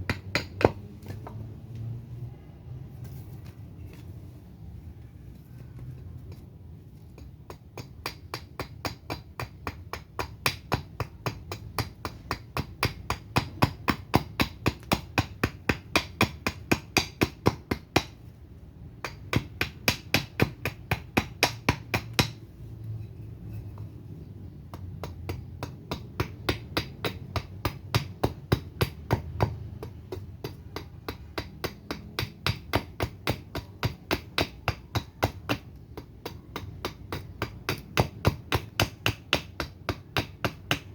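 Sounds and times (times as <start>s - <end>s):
axe chopping wood: 0.0s - 1.6s, 7.1s - 18.3s, 18.9s - 22.4s, 24.7s - 40.9s.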